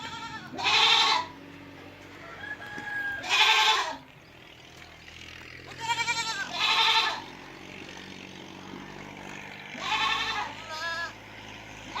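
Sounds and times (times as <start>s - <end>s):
goats bleating: 0.0s - 1.7s, 2.4s - 4.1s, 5.5s - 7.5s, 8.8s - 12.0s.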